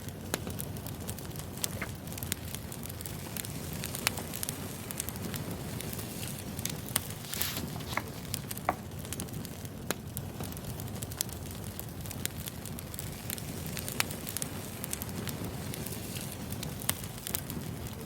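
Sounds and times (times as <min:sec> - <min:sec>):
wood fire crackling: 0:00.0 - 0:18.0
sharp pops and snaps: 0:00.3 - 0:09.3.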